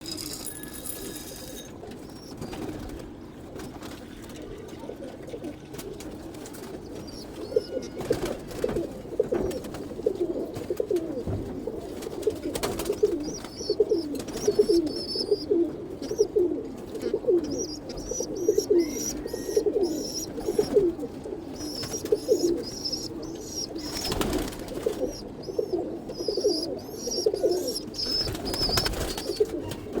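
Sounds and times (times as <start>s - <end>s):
pigeons cooing: 1.8s - 3.5s, 4.2s - 30.0s
high thin peeping: 13.1s - 16.2s, 17.0s - 20.9s, 21.5s - 29.4s.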